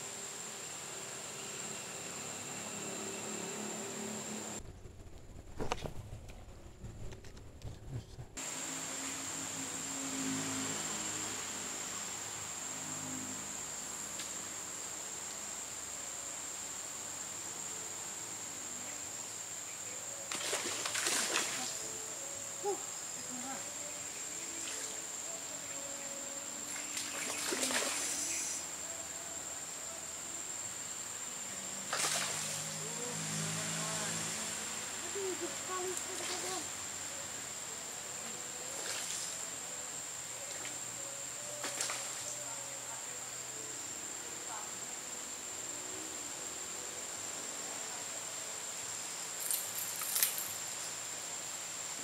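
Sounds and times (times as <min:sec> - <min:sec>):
insects shrilling: 0:08.4 - 0:52.0
river water rushing: 0:26.6 - 0:28.6, 0:31.8 - 0:33.5.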